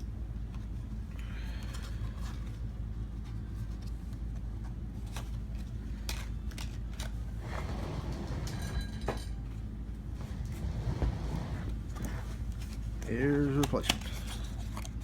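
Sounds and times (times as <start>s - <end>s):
steady low hum: 0.0s - 15.0s
light clicks of small parts: 13.0s - 15.0s.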